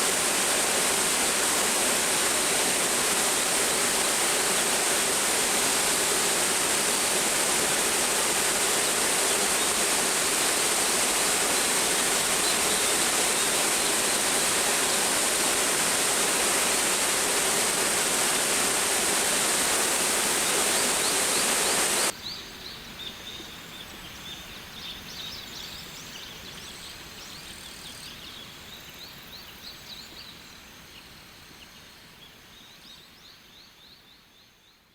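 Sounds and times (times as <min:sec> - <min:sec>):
waterfall roaring: 0:00.0 - 0:22.1.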